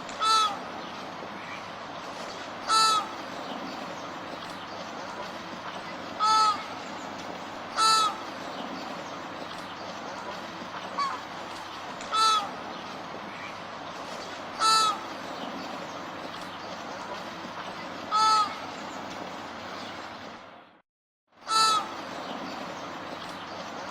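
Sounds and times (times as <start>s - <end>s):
flamingo honking: 0.0s - 0.8s, 2.6s - 3.2s, 6.2s - 6.8s, 7.7s - 8.3s, 12.1s - 12.6s, 14.6s - 15.1s, 18.1s - 18.7s, 21.5s - 22.0s
steady background hiss: 0.0s - 20.6s.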